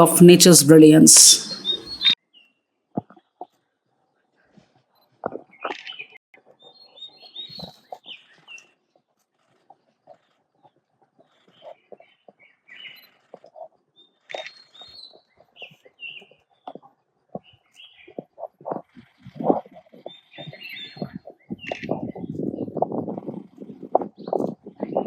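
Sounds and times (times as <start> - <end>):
birds chirping: 0.4 - 2.1.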